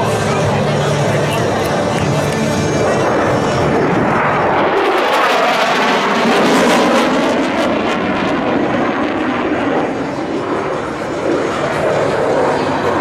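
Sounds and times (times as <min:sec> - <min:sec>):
military aircraft flying past: 0:00.0 - 0:13.0.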